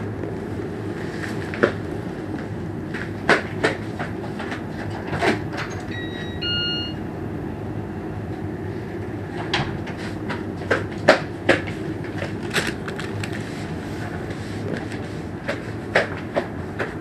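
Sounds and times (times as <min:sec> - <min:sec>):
steady rumbling background: 0:00.0 - 0:05.6
two-tone doorbell chime: 0:05.9 - 0:07.0.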